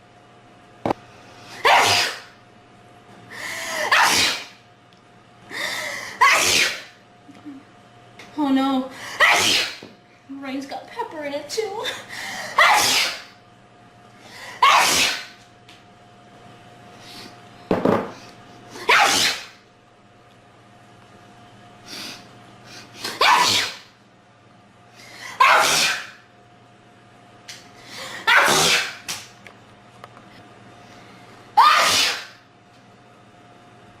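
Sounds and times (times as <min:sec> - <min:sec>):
person sneezing: 0:01.5 - 0:02.3, 0:03.7 - 0:04.6, 0:06.1 - 0:06.9, 0:09.1 - 0:09.8, 0:12.5 - 0:13.3, 0:14.5 - 0:15.3, 0:18.8 - 0:19.6, 0:23.0 - 0:23.8, 0:25.3 - 0:26.2, 0:28.0 - 0:29.0, 0:31.6 - 0:32.4.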